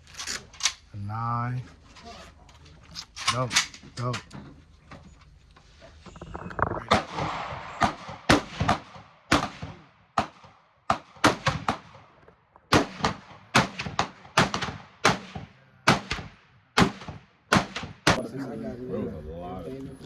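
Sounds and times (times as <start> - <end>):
gunshots with echo: 6.9 - 18.2.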